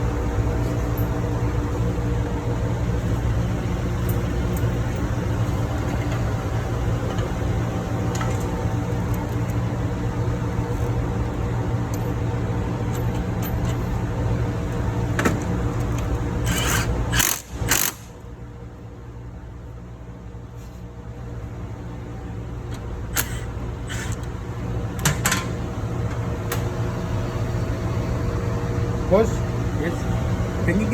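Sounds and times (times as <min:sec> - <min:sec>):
air conditioning hiss: 0:00.0 - 0:30.9
engine room machinery hum: 0:00.0 - 0:30.9.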